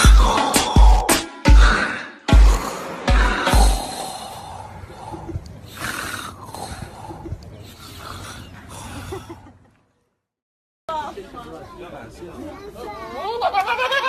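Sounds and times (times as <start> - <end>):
man snoring and snorting: 0.0 - 9.4.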